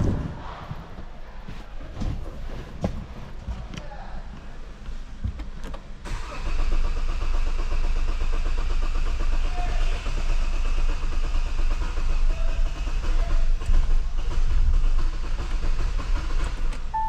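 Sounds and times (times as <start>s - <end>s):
diesel engine turning over: 5.8s - 17.0s.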